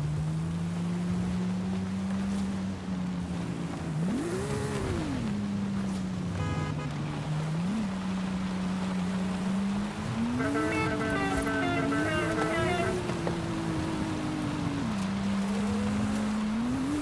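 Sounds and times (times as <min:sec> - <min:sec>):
sports car engine revving: 0:03.8 - 0:17.0.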